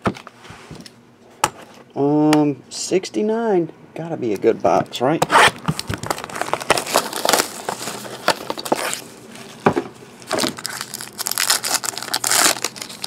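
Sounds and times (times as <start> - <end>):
packaging tearing: 5.3 - 9.1, 10.2 - 13.0
packaging crinkling: 5.5 - 9.6, 10.2 - 13.0.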